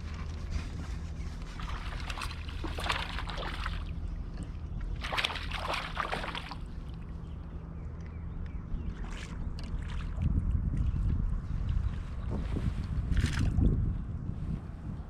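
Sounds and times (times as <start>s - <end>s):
water sloshing around kayak: 0.0s - 13.7s
steady low rumble: 0.0s - 15.0s.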